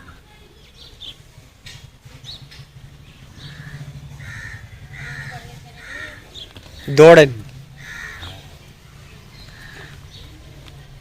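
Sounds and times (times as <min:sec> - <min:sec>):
low steady rumble: 0:01.2 - 0:09.7
crows cawing: 0:03.4 - 0:06.9, 0:07.7 - 0:08.5, 0:09.5 - 0:10.2.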